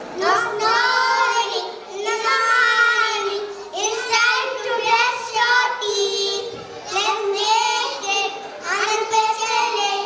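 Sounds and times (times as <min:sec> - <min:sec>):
young children singing: 0:00.0 - 0:10.0.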